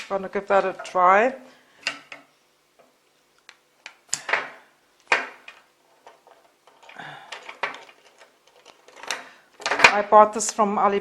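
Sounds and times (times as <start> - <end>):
rustling and handling: 1.8 - 10.4
plastic parts knocking and clicking: 3.8 - 10.1.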